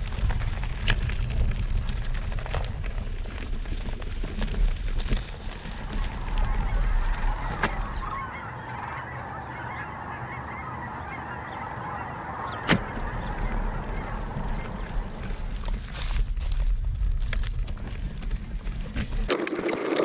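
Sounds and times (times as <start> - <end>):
wind rumble on microphone: 0.0 - 19.3
geese honking: 5.3 - 15.4.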